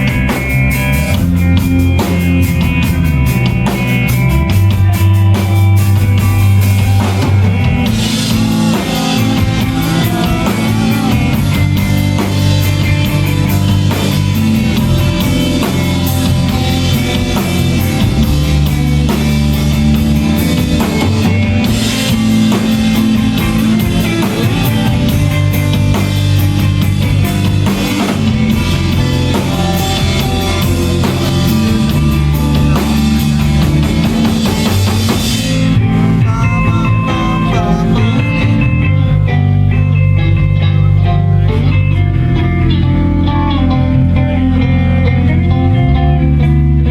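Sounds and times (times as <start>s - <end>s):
drums and cymbals: 0.0s - 39.0s
electric guitars and bass: 0.0s - 46.9s.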